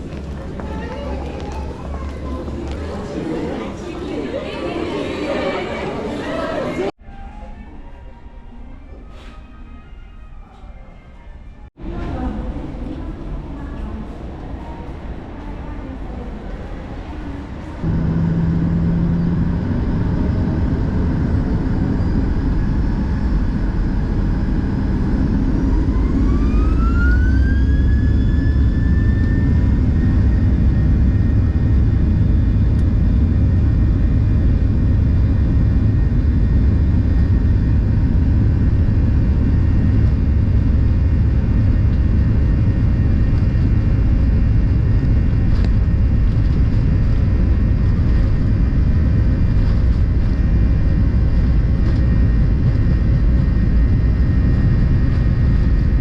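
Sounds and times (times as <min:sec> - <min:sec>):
jet engines spooling up: 0:17.8 - 0:56.0.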